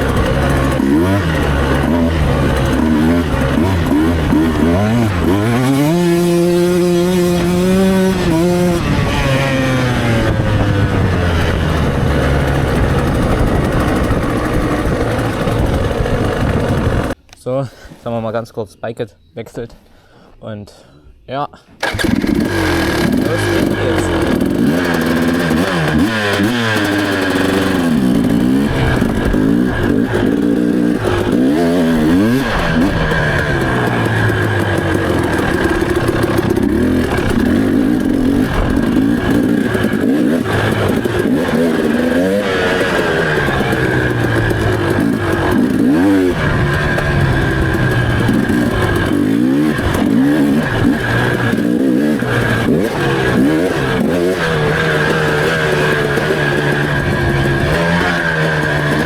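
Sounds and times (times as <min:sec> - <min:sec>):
dirt bike engine revving: 0:00.0 - 0:17.2, 0:21.8 - 0:59.0.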